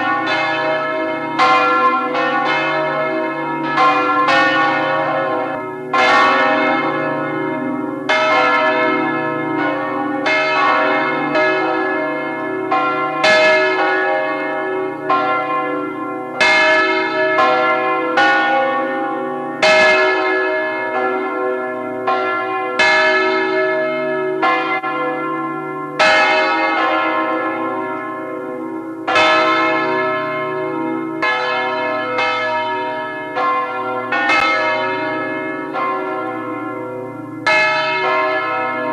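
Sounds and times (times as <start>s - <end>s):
church bells ringing: 0.0s - 38.9s.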